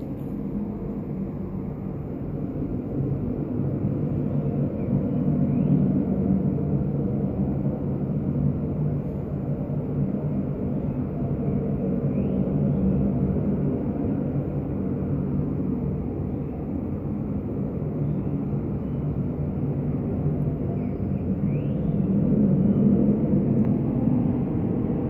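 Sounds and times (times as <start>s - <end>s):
low rumbling drone: 0.0s - 25.0s.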